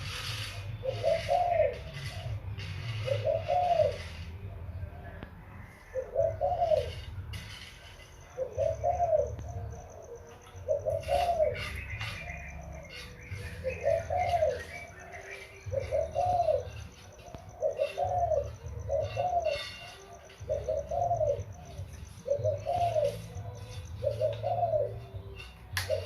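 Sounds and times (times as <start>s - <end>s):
dove cooing: 0.0s - 26.0s.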